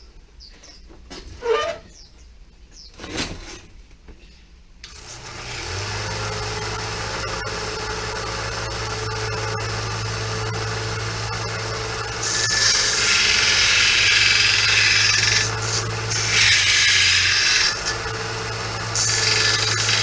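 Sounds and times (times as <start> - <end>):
electric sander humming: 4.9 - 20.0
knife blank grinding on abrasive: 4.9 - 20.0.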